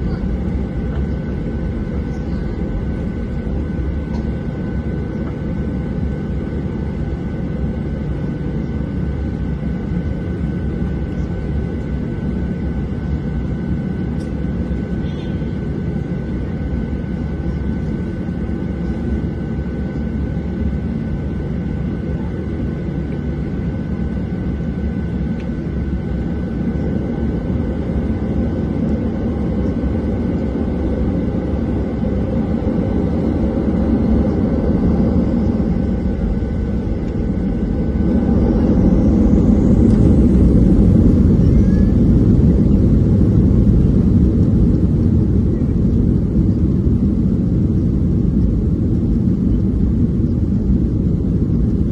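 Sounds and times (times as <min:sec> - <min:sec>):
jet engines rumbling: 0:00.0 - 0:51.9
faint rising whine: 0:32.0 - 0:45.6.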